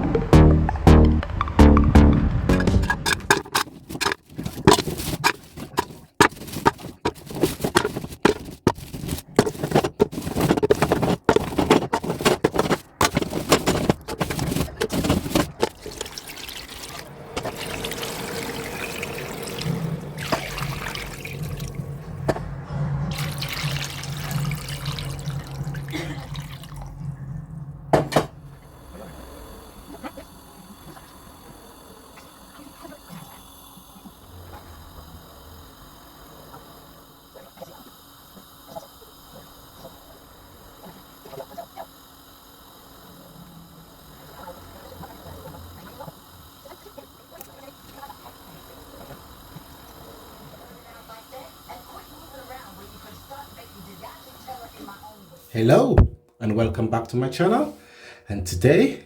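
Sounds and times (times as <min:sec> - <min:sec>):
low hum: 0:00.0 - 0:37.3
water pouring and splashing: 0:03.0 - 0:21.9, 0:23.1 - 0:27.0.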